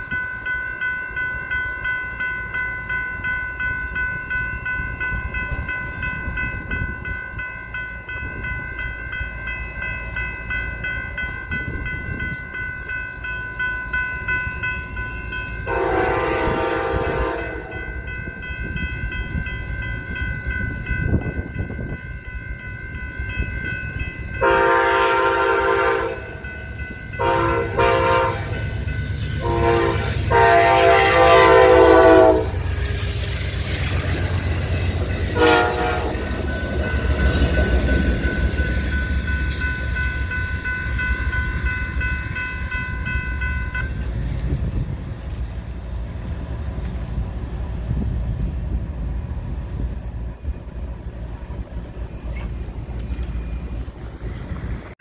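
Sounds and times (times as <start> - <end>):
passing train rumble: 0.0 - 55.0
railroad crossing bell ringing: 0.0 - 55.0
locomotive horn blasts: 15.6 - 17.9, 24.4 - 26.5, 27.1 - 32.6, 35.3 - 36.4.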